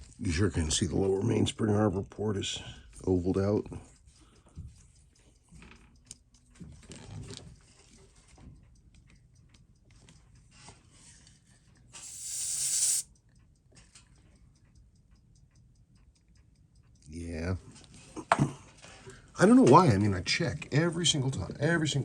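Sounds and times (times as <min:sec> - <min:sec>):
loud hiss: 0:12.0 - 0:13.0.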